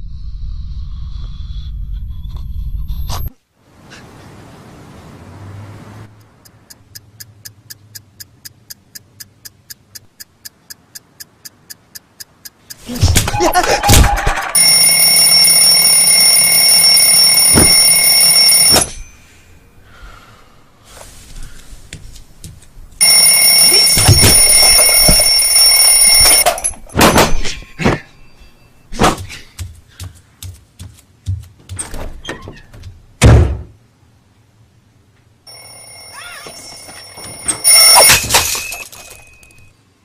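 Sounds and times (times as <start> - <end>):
alarm clock ringing: 14.5 - 19.2, 23.0 - 27.3, 35.5 - 39.7.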